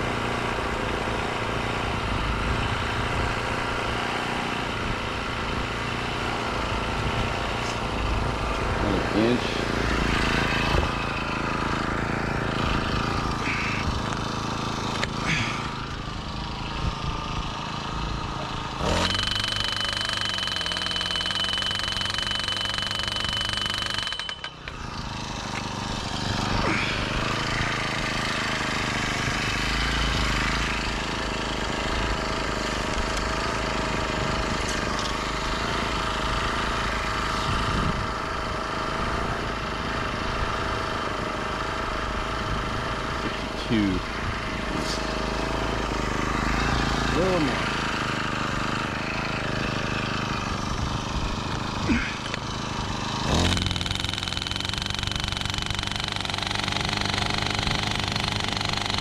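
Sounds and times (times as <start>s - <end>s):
post driver engine running: 0.0s - 59.0s
hammer pounding steel pipe: 18.8s - 24.8s.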